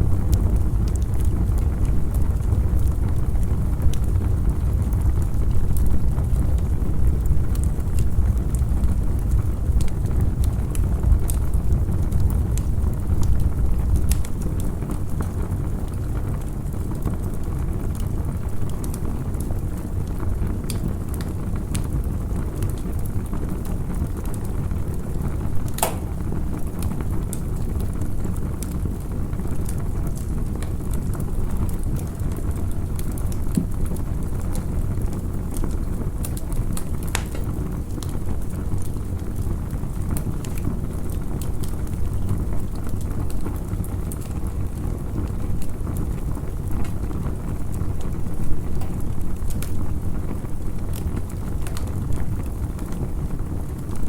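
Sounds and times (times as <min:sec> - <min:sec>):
campfire crackling and popping: 0:00.0 - 0:54.0.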